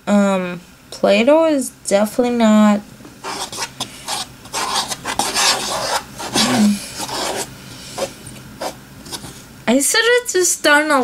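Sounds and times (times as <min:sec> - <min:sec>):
slime scraping and stirring: 0:03.2 - 0:09.4.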